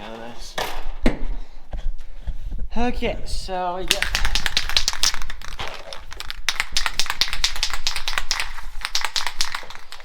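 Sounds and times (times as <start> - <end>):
dense crackles and clicks: 3.9 - 10.0.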